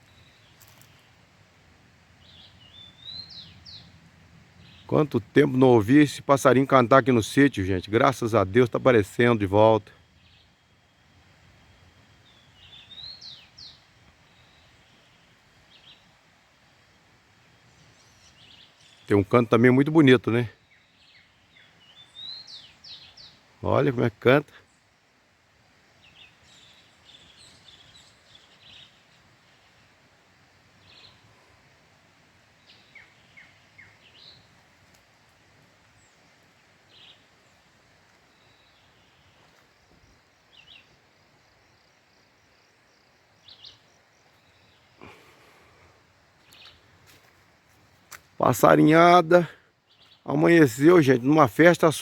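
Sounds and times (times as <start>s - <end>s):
soft outdoor hiss: 0.0s - 52.0s
sparrow singing faintly: 2.2s - 4.0s, 4.6s - 16.2s, 17.5s - 25.1s, 26.0s - 30.0s, 30.8s - 31.6s, 32.5s - 34.6s, 35.9s - 52.0s
birds chirping and whistling: 12.2s - 13.8s.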